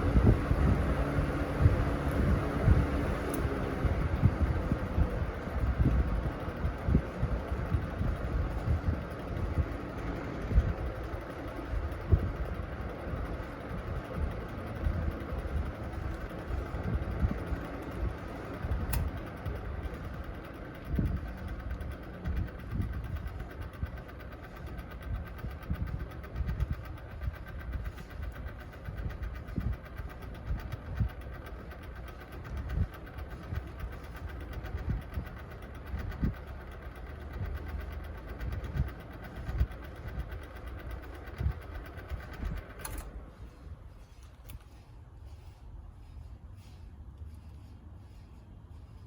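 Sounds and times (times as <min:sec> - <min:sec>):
box fan motor hum: 0:00.0 - 0:49.0
sharp click: 0:18.9 - 0:19.2.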